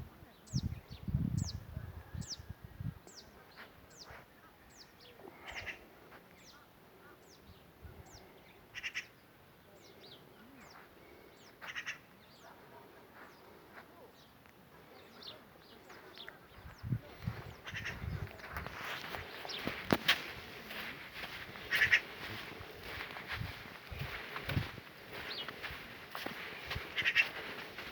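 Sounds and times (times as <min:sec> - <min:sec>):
harsh rasping bird call: 0:21.7 - 0:22.1, 0:27.0 - 0:27.4.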